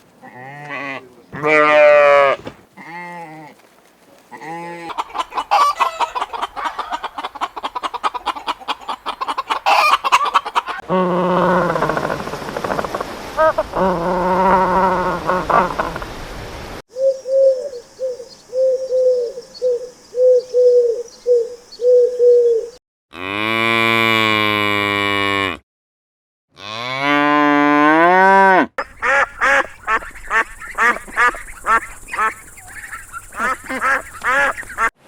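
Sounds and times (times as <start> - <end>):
cow mooing: 0.2 - 3.4, 23.2 - 25.6, 26.6 - 28.7
duck quacks: 28.8 - 34.9.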